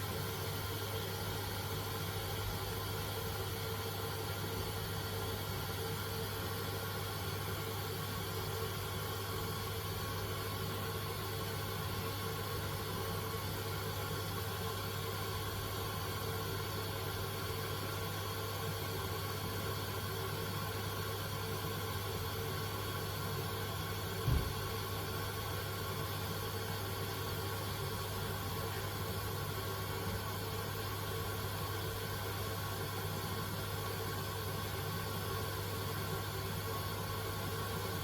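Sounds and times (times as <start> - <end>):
washing machine running: 0.0 - 38.0
low thump: 24.2 - 24.6.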